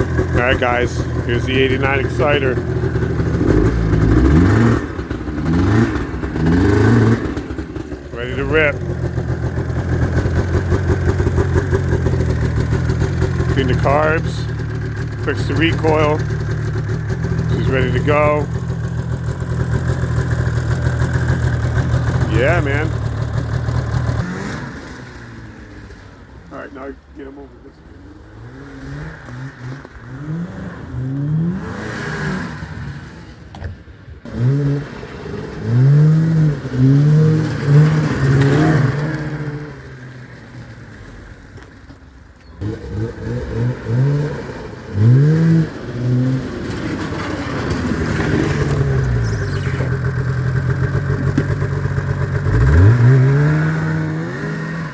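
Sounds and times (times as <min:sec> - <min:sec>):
two-stroke engine revving: 0:00.0 - 0:25.4, 0:34.3 - 0:40.1, 0:42.6 - 0:54.9.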